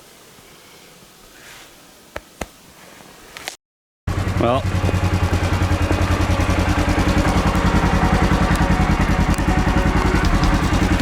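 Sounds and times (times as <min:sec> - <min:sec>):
small engine running: 0:04.1 - 0:11.0.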